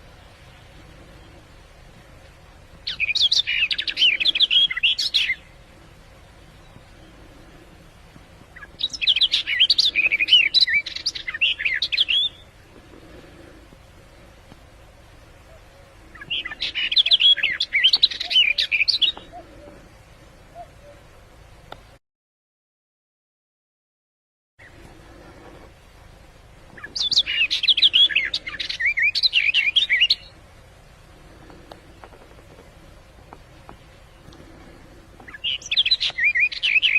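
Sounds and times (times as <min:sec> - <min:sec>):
songbird chirping and warbling: 0:00.0 - 0:21.5, 0:26.7 - 0:36.9.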